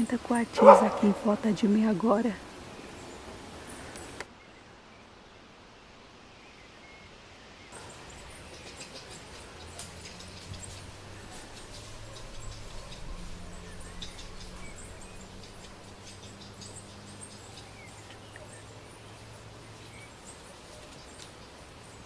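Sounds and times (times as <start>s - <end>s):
animals chirping and squeaking: 0.0s - 2.4s, 7.8s - 21.6s
low steady hum: 7.8s - 22.0s
rustling in leaf litter: 7.8s - 22.0s.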